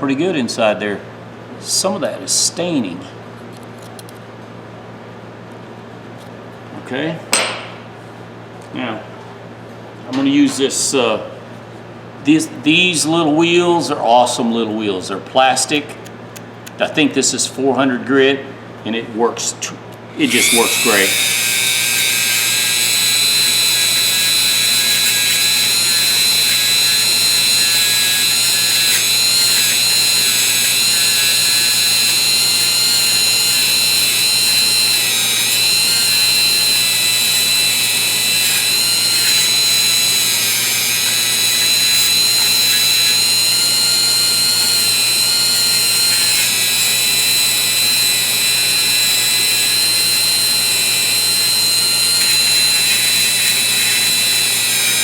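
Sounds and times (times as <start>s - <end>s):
rotary tool high-pitched whine: 20.1s - 55.0s.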